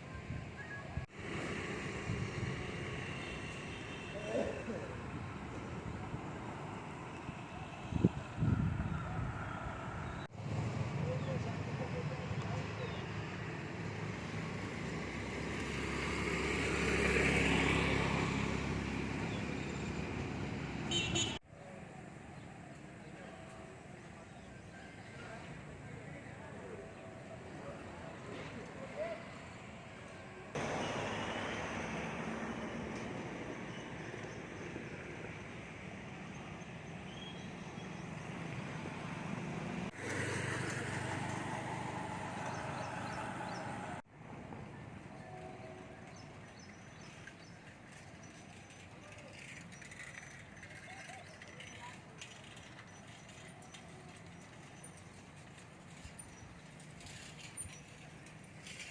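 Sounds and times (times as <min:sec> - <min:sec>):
street ambience: 0:00.0 - 0:58.9
vehicle passing on road: 0:01.0 - 0:21.4, 0:25.1 - 0:45.1.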